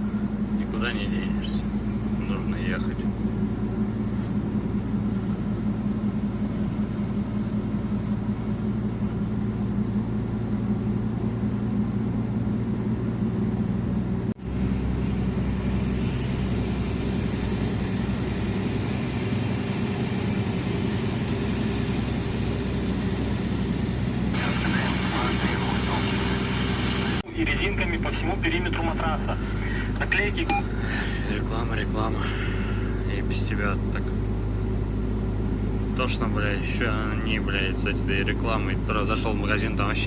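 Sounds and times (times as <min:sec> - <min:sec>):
truck engine and road noise: 0:00.0 - 0:40.0.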